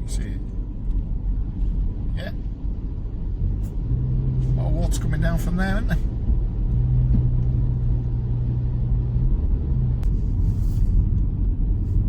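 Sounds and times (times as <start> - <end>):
car engine and tyres rumbling: 0.0 - 12.0.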